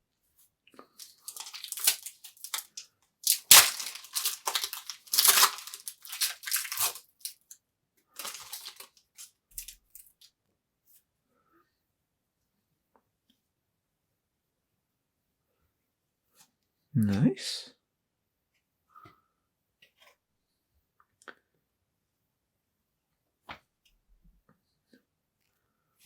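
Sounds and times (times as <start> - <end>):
foil wrapper crinkling and tearing: 1.0 - 7.6, 8.2 - 10.3.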